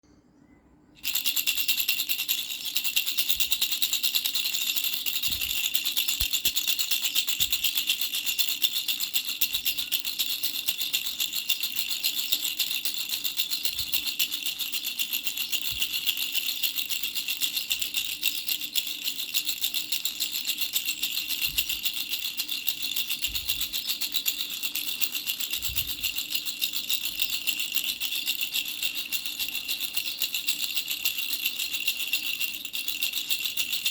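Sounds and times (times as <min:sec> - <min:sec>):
baby rattle toy shaken: 0:01.0 - 0:33.9.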